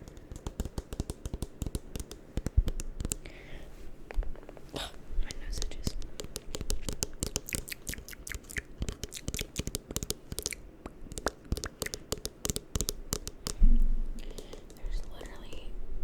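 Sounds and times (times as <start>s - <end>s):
plastic bottle tapping: 0.0s - 3.2s, 6.1s - 7.5s, 11.1s - 13.6s
sticky lotion clicks on fingers: 0.0s - 3.3s, 5.6s - 13.6s, 14.2s - 15.3s.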